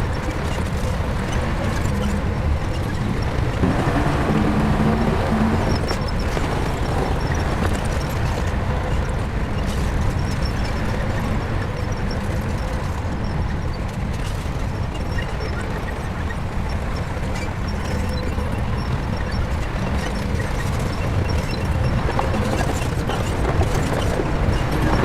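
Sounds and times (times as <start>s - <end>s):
bulldozer diesel engine running: 2.1s - 11.6s, 18.6s - 25.0s.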